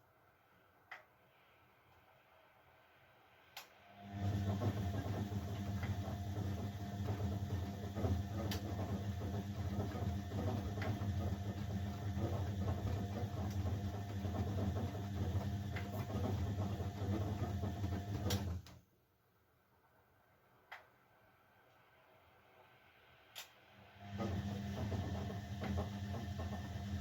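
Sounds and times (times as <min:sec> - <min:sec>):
washing machine motor hum: 0:03.9 - 0:18.8, 0:23.8 - 0:27.0.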